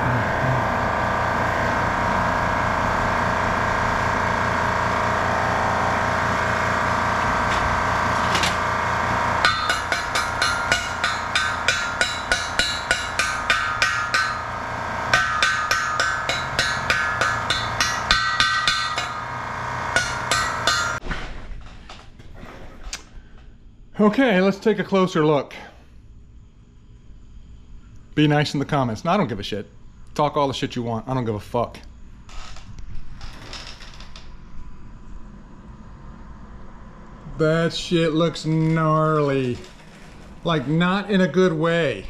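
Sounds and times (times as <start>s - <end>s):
steady mechanical running noise: 0.0s - 42.0s
hammer blows on steel: 9.4s - 21.0s.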